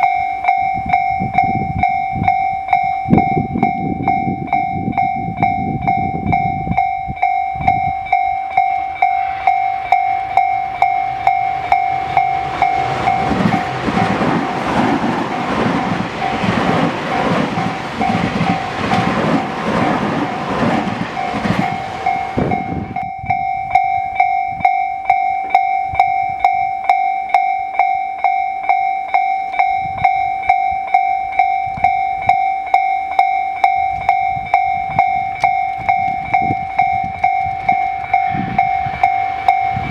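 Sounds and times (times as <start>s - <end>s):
level crossing alarm bell: 0.0s - 39.9s
train wheels clattering over rail joints: 9.5s - 23.0s.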